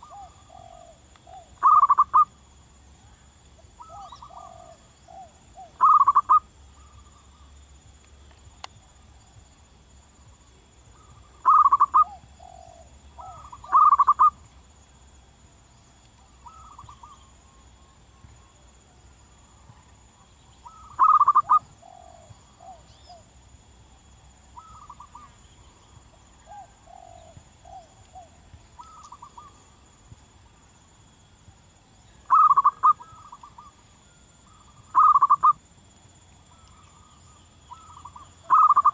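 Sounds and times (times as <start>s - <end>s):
dove cooing: 0.0s - 2.3s, 3.8s - 7.0s, 10.9s - 14.4s, 16.4s - 17.3s, 20.6s - 23.2s, 24.6s - 25.3s, 26.4s - 29.6s, 32.3s - 33.7s, 34.5s - 35.6s, 37.7s - 38.9s
faint high-pitched hum: 0.0s - 38.9s.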